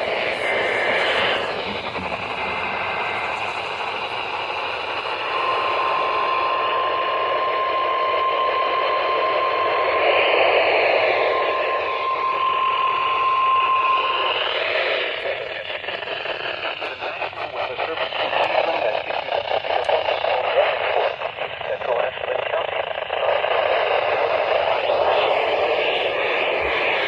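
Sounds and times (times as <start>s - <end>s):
weather radio broadcast: 0.0s - 6.3s, 16.6s - 27.0s.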